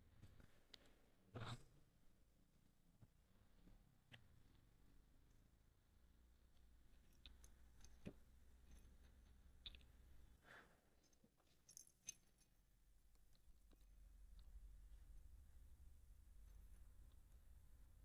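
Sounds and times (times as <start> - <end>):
faint low hum: 0.0 - 18.0.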